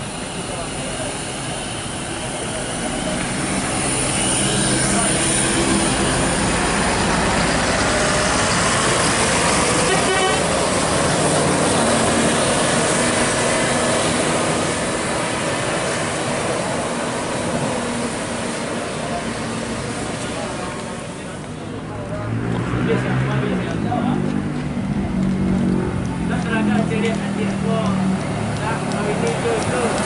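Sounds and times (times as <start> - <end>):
bus diesel engine running: 0.0 - 30.0.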